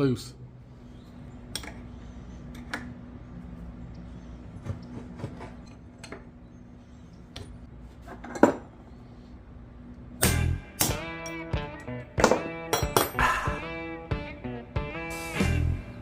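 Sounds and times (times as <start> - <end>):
music: 10.2 - 16.0
metal tools tapping on a vise: 12.2 - 13.2.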